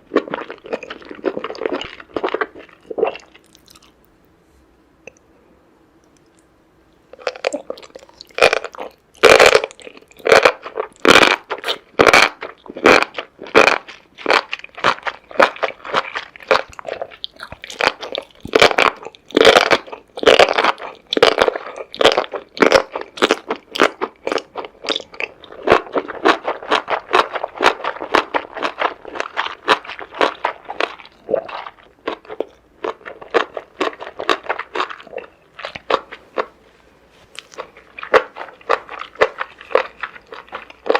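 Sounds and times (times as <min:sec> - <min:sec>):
person chewing crunchy food: 0:00.0 - 0:04.0, 0:07.1 - 0:40.9.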